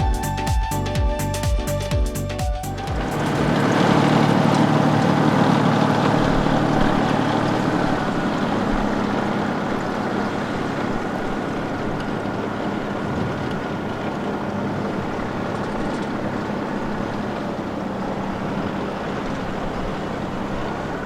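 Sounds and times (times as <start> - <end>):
train rushing past: 2.2 - 9.3.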